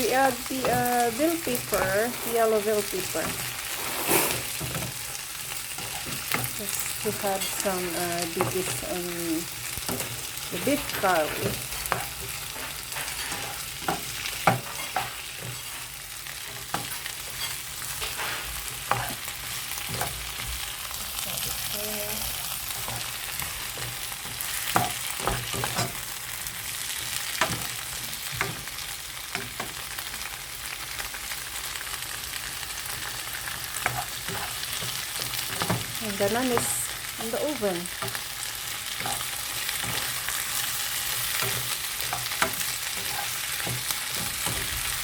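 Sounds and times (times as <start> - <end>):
vegetables sizzling in a pan: 0.0 - 45.0
utensil scraping a pan: 0.2 - 9.1, 9.7 - 21.7, 32.9 - 37.4, 38.0 - 45.0.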